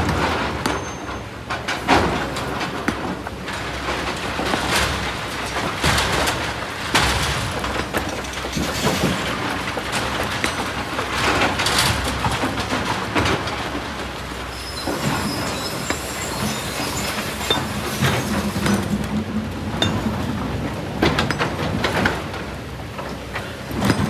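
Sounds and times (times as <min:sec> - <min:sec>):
metal and rock clanking: 0:03.7 - 0:22.4
thin high squeal: 0:14.5 - 0:18.5.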